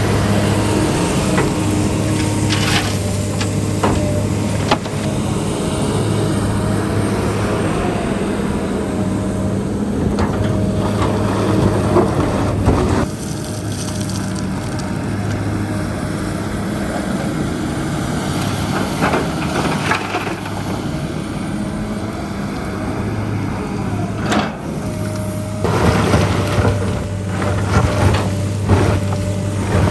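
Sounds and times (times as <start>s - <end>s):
heavy machine engine running: 0.0s - 29.9s
knocks and scrapes: 1.3s - 5.1s, 24.5s - 29.9s.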